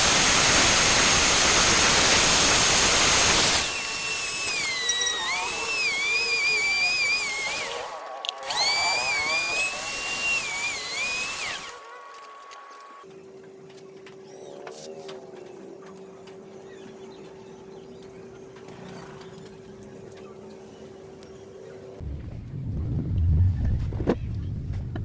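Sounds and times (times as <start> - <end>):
power tool on metal: 0.0 - 13.0.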